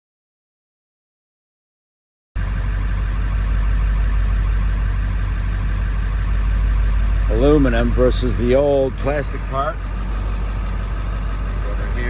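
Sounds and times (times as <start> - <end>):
diesel engine idling: 2.4 - 12.0.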